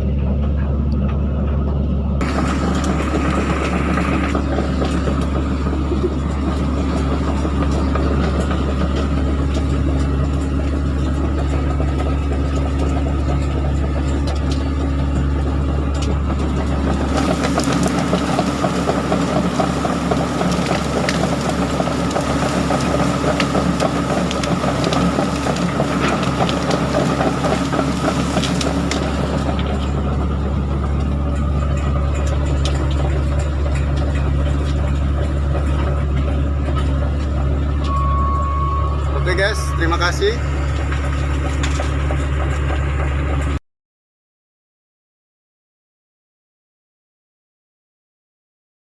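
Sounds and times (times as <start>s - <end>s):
excavator diesel engine running: 0.0s - 43.6s
knocks and cracks: 15.9s - 37.6s.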